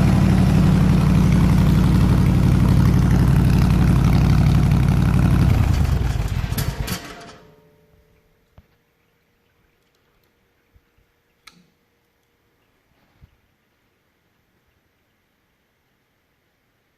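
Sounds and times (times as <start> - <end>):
engine idling and winding down: 0.0 - 7.3
clicks: 11.4 - 12.3.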